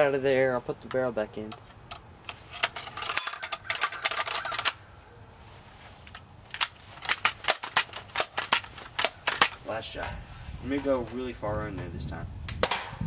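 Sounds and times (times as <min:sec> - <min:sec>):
toy gun clicks and rattles: 0:02.6 - 0:04.8, 0:06.1 - 0:09.6.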